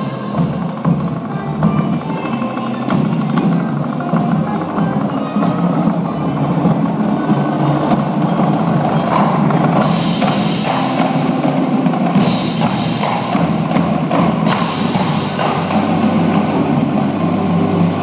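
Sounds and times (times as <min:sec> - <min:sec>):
drumline playing: 0:00.0 - 0:18.0
loud accented cymbal hits: 0:08.4 - 0:18.0.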